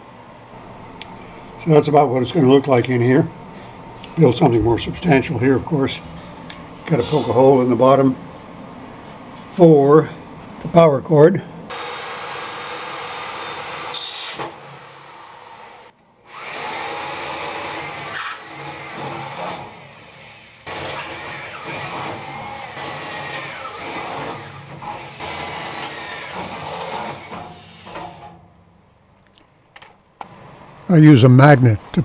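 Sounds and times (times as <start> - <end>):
drill bit squealing on metal: 7.0 - 7.5
power drill boring through steel: 11.8 - 19.6.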